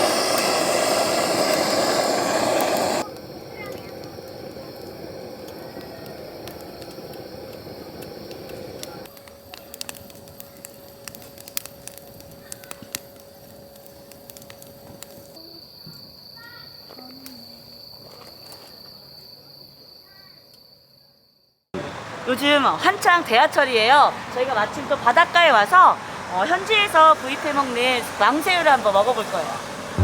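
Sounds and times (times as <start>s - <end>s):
rumbling hiss: 0.0s - 15.4s.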